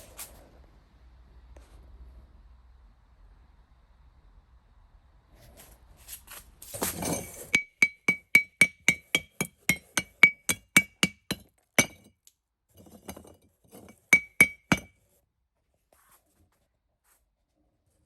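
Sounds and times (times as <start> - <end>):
charcoal pieces tapped together ringing: 7.6 - 12.1, 14.1 - 14.9.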